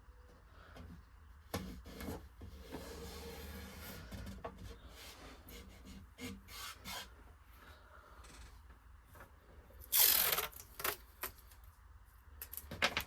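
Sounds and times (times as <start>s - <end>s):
tape rubbing on board: 5.2s - 7.2s.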